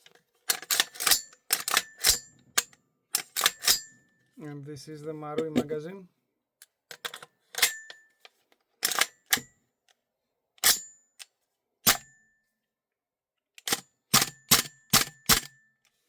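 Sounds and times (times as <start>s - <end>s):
metal clacks of rifle handling: 0.0s - 3.9s.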